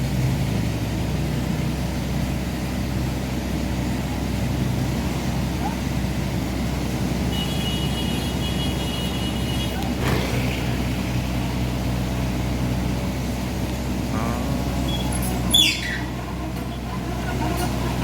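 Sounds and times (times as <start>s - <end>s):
excavator diesel engine running: 0.0s - 18.0s.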